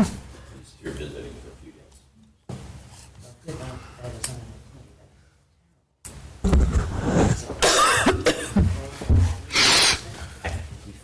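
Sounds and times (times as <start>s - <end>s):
person coughing: 7.6s - 8.7s.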